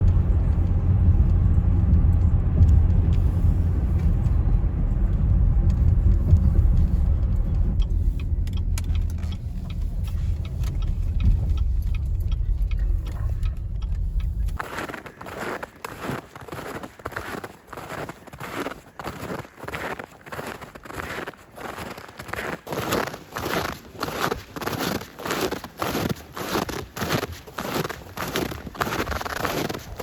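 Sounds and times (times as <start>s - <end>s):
car road rumble: 0.0s - 17.9s, 20.4s - 30.0s
light clicking and jingling: 5.1s - 14.6s.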